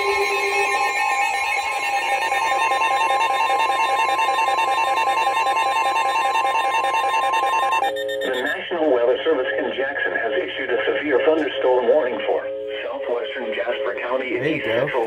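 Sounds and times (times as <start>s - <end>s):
two-tone alert signal: 0.0s - 8.8s.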